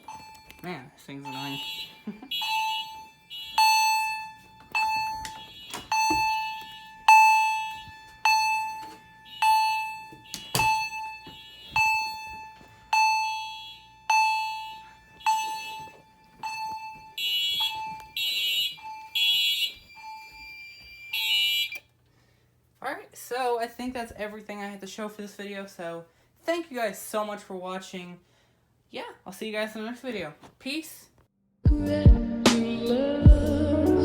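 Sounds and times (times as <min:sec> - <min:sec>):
fire alarm chime: 0:00.0 - 0:21.9.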